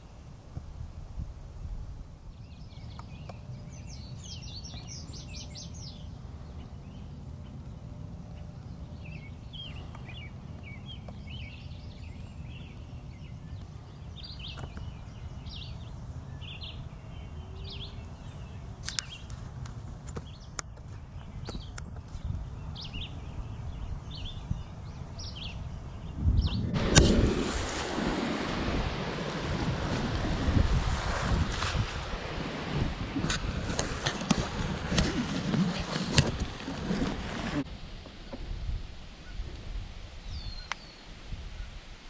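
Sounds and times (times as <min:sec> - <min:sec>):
low rumble of wind: 0:00.0 - 0:42.0
small birds singing: 0:02.2 - 0:26.8, 0:40.2 - 0:41.1.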